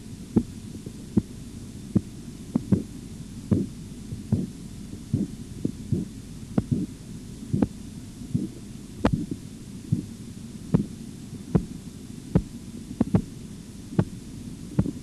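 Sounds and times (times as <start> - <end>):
pulse tapping through stethoscope: 3.5 - 4.5, 5.1 - 6.9, 8.4 - 10.1, 12.4 - 13.3, 14.8 - 15.0.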